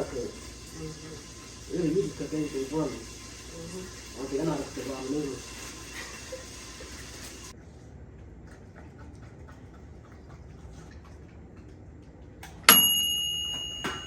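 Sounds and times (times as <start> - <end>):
bright timer ding: 12.7 - 14.0.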